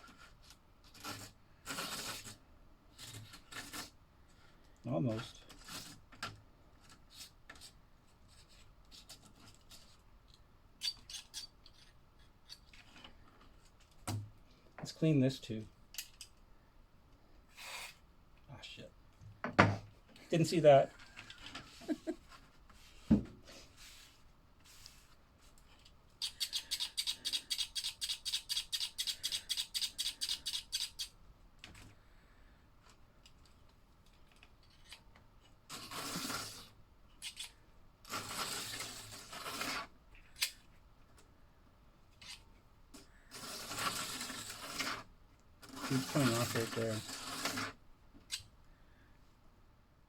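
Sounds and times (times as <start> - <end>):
thump: 19.4 - 19.9, 23.1 - 23.4
toy car electric motor whirring: 26.2 - 31.2, 35.7 - 37.5, 38.1 - 40.5, 43.3 - 45.0, 45.6 - 48.4.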